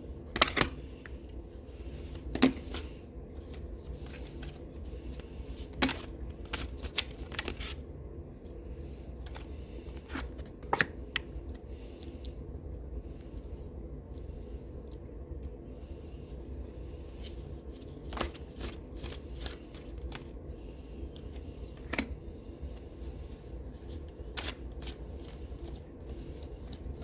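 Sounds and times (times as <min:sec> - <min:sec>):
low steady hum: 0:00.0 - 0:27.0
cards snapping and tapping: 0:00.3 - 0:00.8, 0:02.2 - 0:02.9
cards being shuffled: 0:00.3 - 0:07.8, 0:09.2 - 0:11.2, 0:17.0 - 0:20.4, 0:22.8 - 0:27.0.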